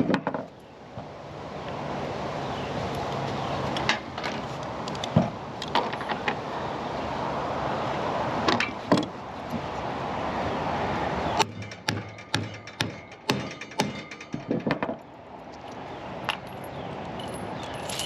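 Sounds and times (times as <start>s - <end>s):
hardware knocks and clatters: 11.4s - 15.0s.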